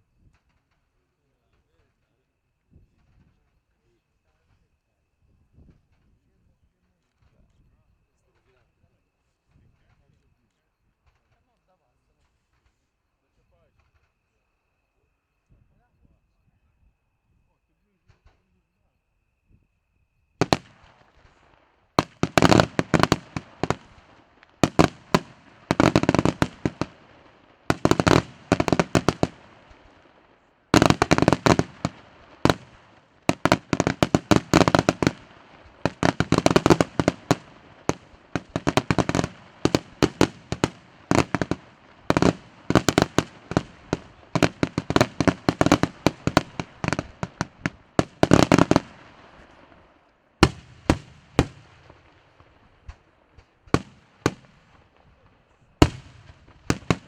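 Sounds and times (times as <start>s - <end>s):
fireworks bangs and crackles: 20.4s - 57.0s.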